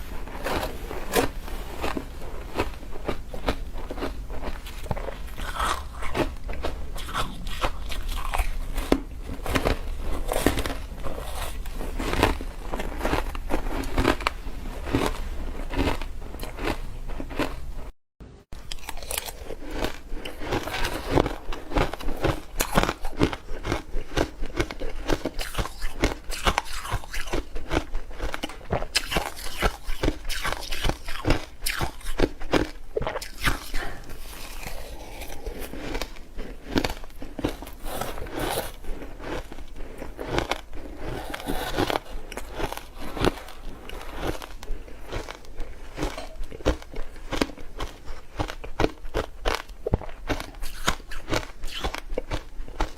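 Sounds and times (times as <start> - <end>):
ice being chewed: 0.0 - 17.9, 18.6 - 52.9.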